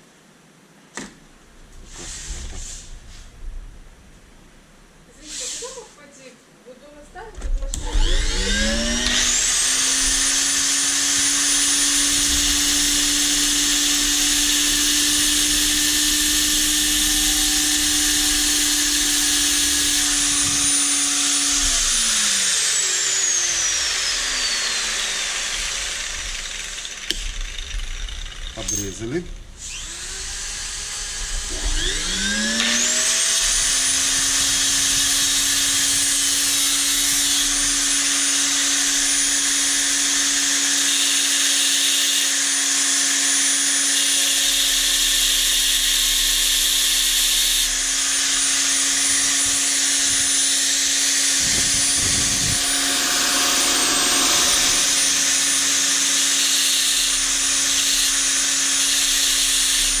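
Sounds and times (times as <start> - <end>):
hissing scrape of metal cutting: 5.2 - 5.9, 48.3 - 58.3
power tool motor whining: 7.6 - 28.8, 29.6 - 60.0.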